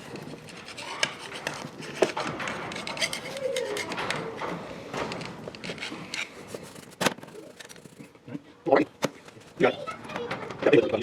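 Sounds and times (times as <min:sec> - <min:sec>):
hand tools scraping and tapping: 0:00.0 - 0:08.1.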